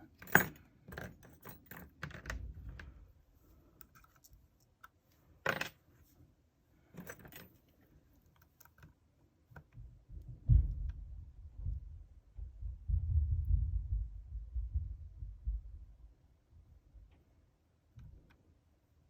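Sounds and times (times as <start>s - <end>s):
lock pick clicking and scraping: 0.0s - 2.9s, 3.7s - 5.8s, 6.9s - 9.8s
dull low thump: 10.1s - 15.9s.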